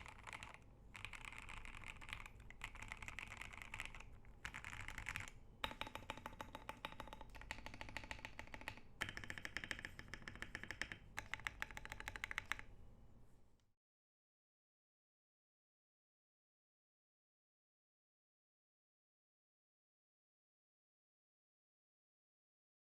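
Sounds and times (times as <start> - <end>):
mechanical keyboard typing: 0.0 - 12.7.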